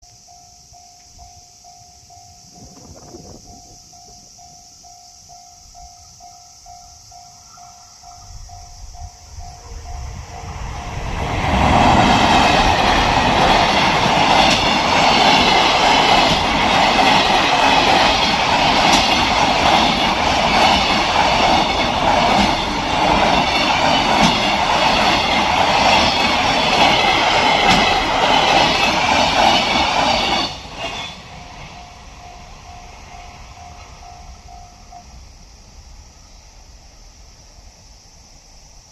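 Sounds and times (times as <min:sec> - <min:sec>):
crossing warning bell ringing: 0:00.0 - 0:35.4
train wheels clacking over rail joints: 0:11.2 - 0:31.8.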